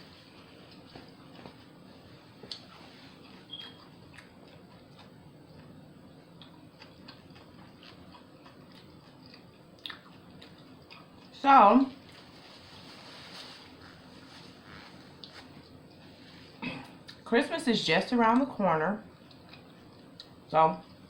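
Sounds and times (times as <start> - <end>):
close-miked chewing sandwich: 2.4 - 11.4.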